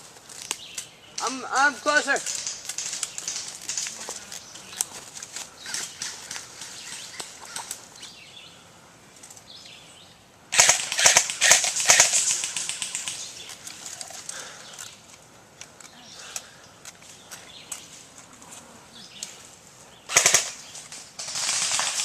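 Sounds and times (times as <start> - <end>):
rapid cracks: 0.0 - 7.9, 10.5 - 17.8, 20.1 - 22.0
rustling: 0.0 - 8.2, 10.5 - 22.0
sharp clicks: 2.1 - 4.9, 10.5 - 17.8, 20.1 - 22.0.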